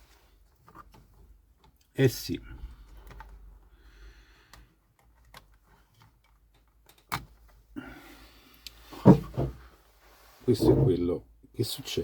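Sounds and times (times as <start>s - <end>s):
plastic laptop parts clicking: 4.5s - 7.3s.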